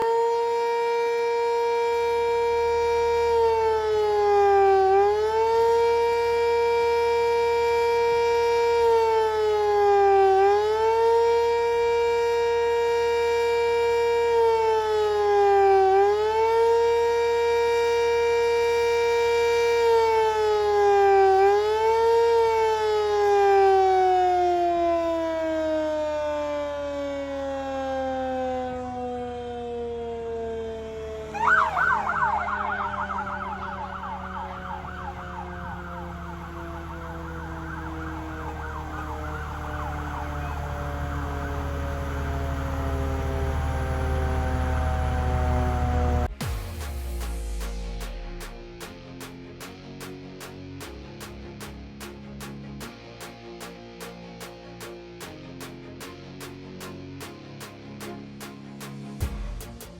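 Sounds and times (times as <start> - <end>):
fire station siren: 0.0 - 46.8.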